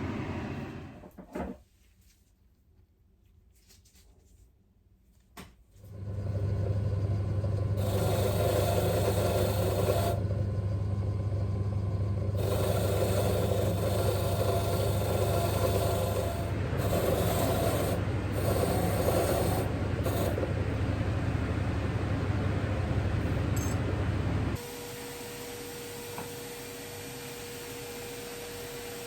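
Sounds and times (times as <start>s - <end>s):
motor hum: 5.9s - 24.6s.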